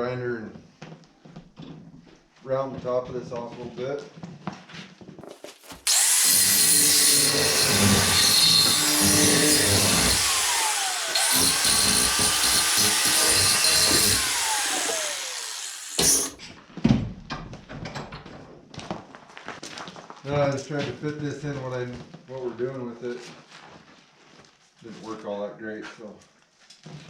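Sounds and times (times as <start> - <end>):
electric grinder grinding steel: 5.7 - 16.4.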